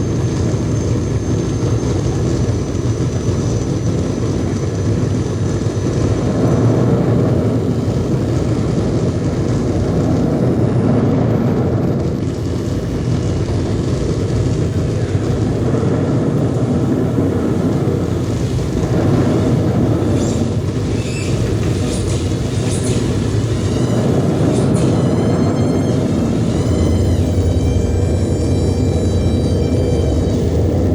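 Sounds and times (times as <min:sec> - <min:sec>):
low rumbling noise music: 0:00.0 - 0:30.9
high electronic chirps: 0:22.1 - 0:30.9.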